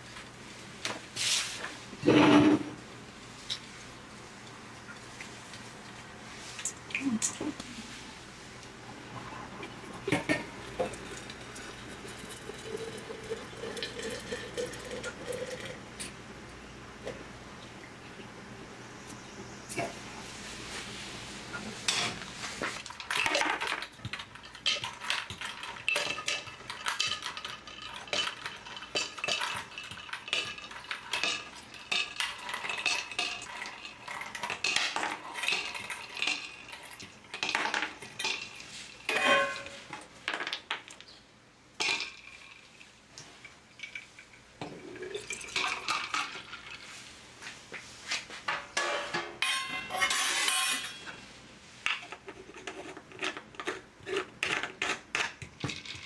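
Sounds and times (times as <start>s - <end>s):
utensils clinking against dishes: 21.8s - 22.2s, 22.8s - 40.1s, 48.5s - 51.2s.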